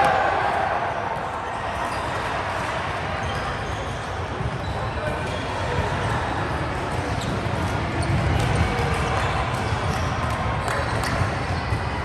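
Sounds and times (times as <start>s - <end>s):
shoe squeaks: 1.8s - 5.4s.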